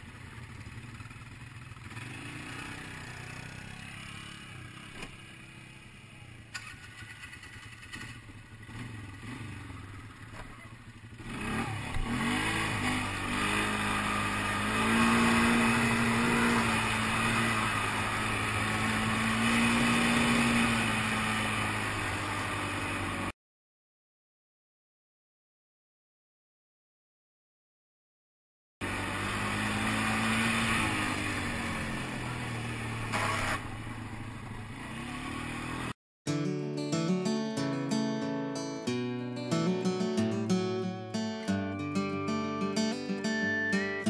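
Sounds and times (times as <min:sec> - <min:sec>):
atv engine revving: 0:00.0 - 0:23.3, 0:28.8 - 0:36.0.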